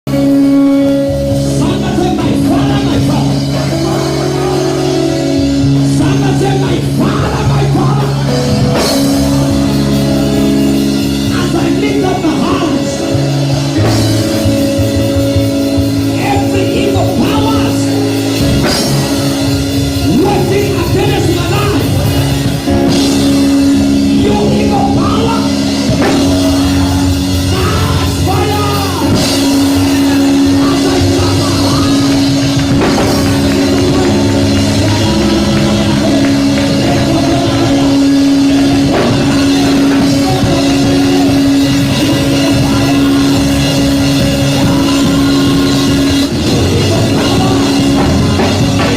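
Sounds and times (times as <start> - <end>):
loud band music: 0.0 - 48.9
drums: 0.1 - 48.9
people singing: 1.6 - 10.1, 21.0 - 48.9.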